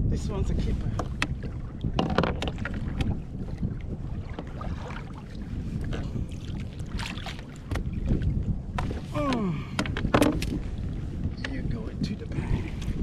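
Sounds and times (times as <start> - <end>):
wind rumble on microphone: 0.0 - 13.0
knocks and rustles handling gear: 9.8 - 10.6.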